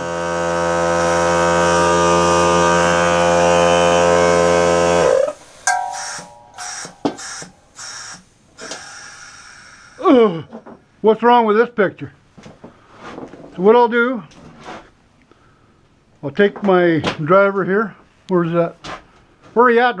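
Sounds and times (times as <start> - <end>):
air compressor motor humming: 0.0 - 5.8.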